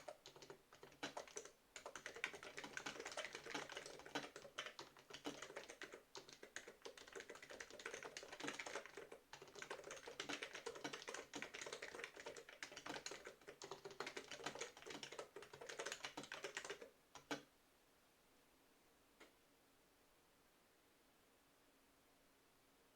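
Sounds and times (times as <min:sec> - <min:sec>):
fast keyboard typing: 0:00.0 - 0:17.5.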